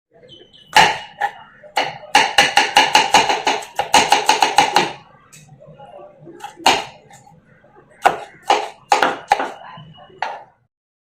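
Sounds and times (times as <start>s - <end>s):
knife chopping on cutting board: 0.8s - 5.0s, 6.4s - 7.0s, 8.0s - 9.6s.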